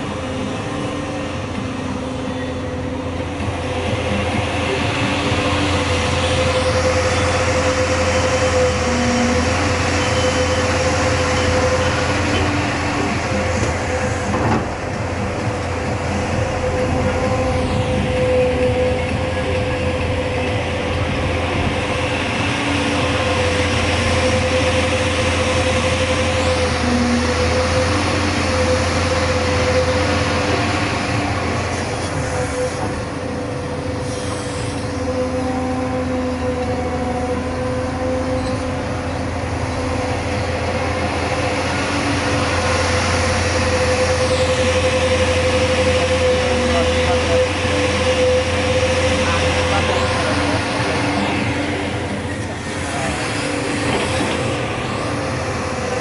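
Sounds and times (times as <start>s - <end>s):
excavator engine and hydraulics: 0.0s - 56.0s
high whine: 0.0s - 56.0s.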